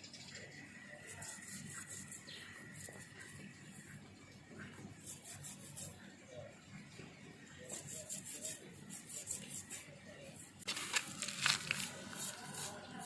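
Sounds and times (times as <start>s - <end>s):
quick rasping strokes: 7.7s - 13.0s.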